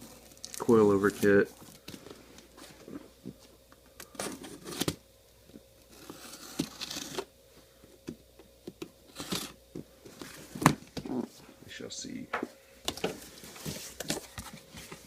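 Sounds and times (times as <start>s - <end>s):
packing tape tearing: 4.0s - 5.0s, 5.8s - 7.3s, 9.1s - 9.6s.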